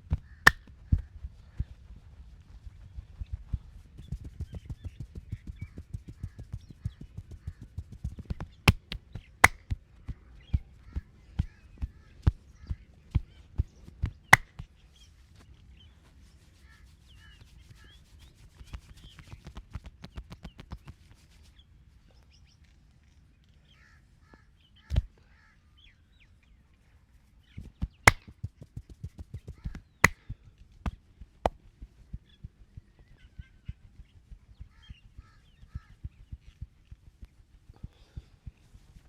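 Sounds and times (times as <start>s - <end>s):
hands slapping and tapping: 8.7s - 9.6s, 28.1s - 28.3s.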